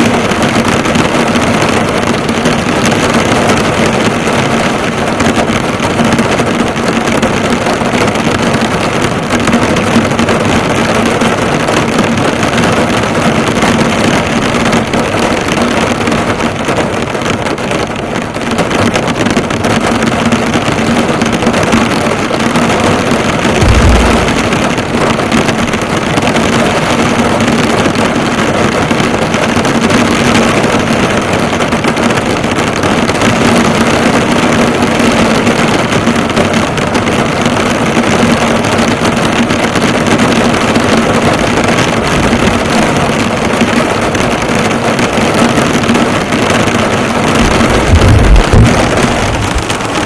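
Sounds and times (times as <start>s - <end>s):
heavy rain drumming on car roof: 0.0s - 50.0s
low thump: 23.6s - 25.4s, 47.4s - 50.0s.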